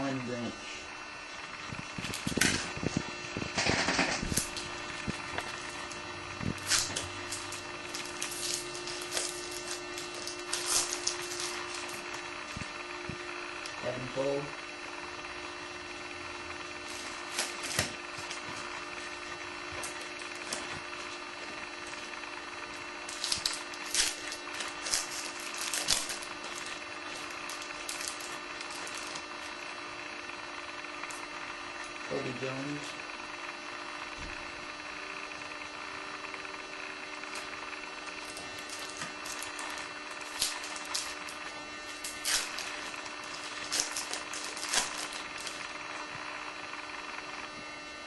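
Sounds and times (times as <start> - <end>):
low electrical hum: 0.0 - 48.0
trading cards rustling: 1.8 - 13.7, 16.8 - 29.6, 37.2 - 46.1.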